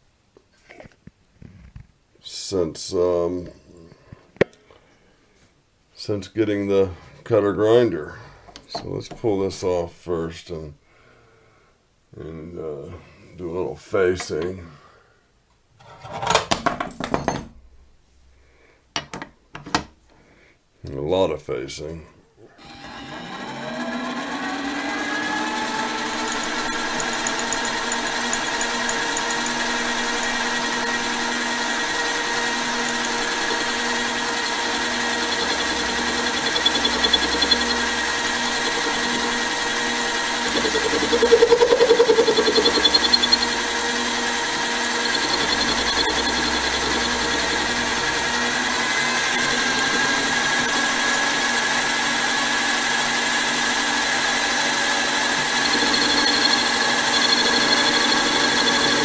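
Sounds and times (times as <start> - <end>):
lathe cutting aluminum: 22.6 - 59.0
lathe motor whine: 22.6 - 59.0.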